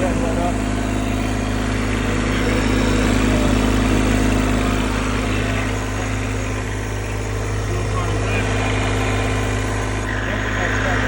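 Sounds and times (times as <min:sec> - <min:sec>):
diesel engine running: 0:00.0 - 0:11.0.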